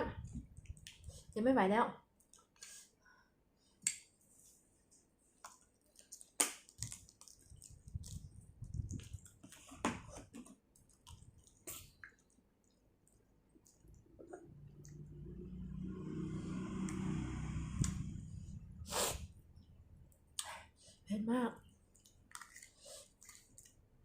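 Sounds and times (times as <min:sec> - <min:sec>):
chewing and crunching: 0:05.5 - 0:14.1, 0:21.9 - 0:23.8.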